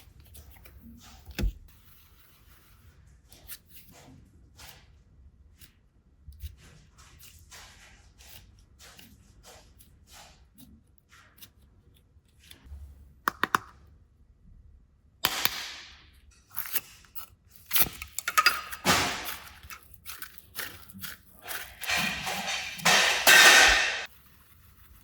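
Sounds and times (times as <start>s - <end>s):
loud crack: 22.2s - 24.1s.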